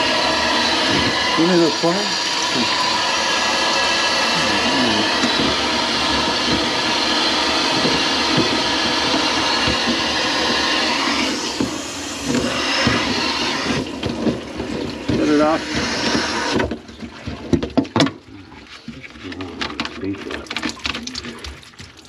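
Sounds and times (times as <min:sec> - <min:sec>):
machine motor whirring: 0:00.0 - 0:16.9.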